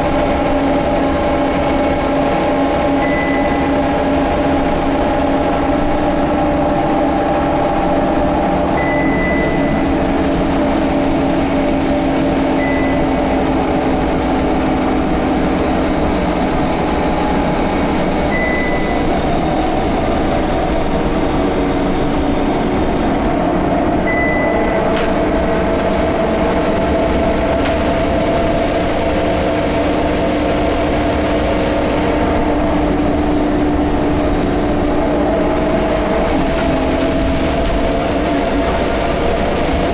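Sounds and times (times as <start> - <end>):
bus engine droning: 0.0 - 39.9
high whine: 0.0 - 39.9
faint short beeps: 3.0 - 3.7, 8.8 - 9.8, 12.6 - 13.2, 18.3 - 19.0, 24.1 - 24.8.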